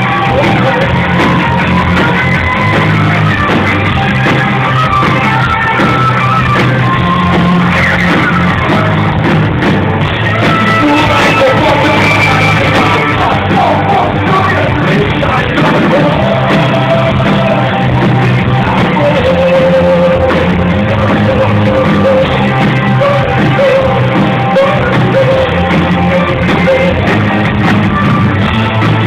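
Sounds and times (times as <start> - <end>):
person singing: 0.0 - 2.8, 10.2 - 27.4
crowd noise: 0.0 - 29.0
live rock band playing: 0.0 - 29.0.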